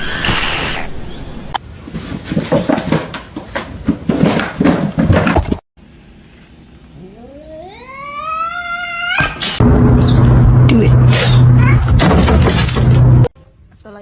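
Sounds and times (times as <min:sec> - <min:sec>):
rapid knocks and scuffling: 0:01.6 - 0:05.6
cat yowling: 0:07.0 - 0:09.6.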